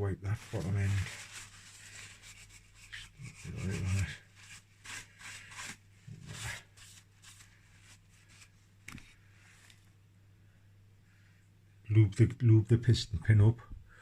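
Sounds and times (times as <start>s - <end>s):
cloth rag scrubbing metal: 0.2s - 8.6s.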